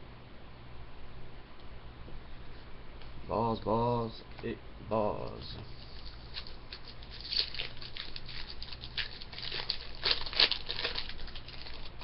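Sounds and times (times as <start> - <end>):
card wrapper crackling and rustling: 5.8 - 12.0.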